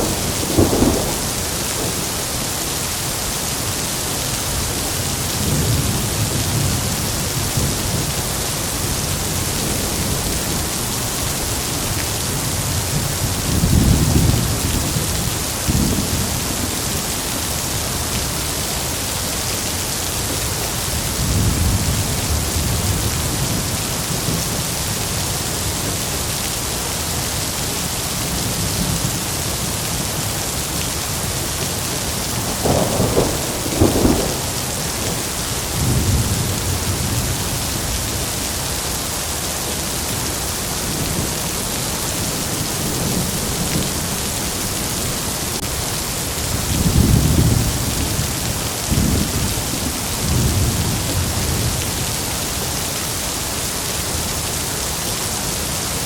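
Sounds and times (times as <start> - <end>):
thunder rumbling: 0.0 - 3.4, 32.1 - 38.1
heavy rain falling: 0.0 - 56.0.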